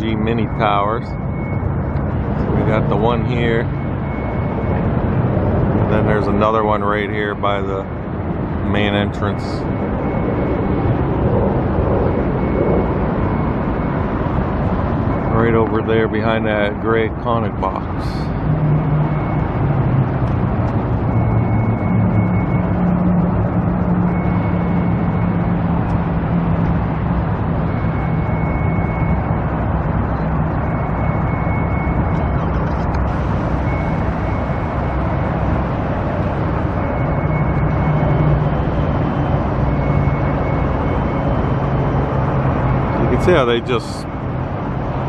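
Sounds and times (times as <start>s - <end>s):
faint high-pitched beep: 0.0s - 4.9s, 12.2s - 14.1s, 15.1s - 19.7s, 21.1s - 23.2s, 23.9s - 25.5s, 27.7s - 29.4s, 30.0s - 35.4s, 39.6s - 42.0s
traffic noise: 0.0s - 45.0s.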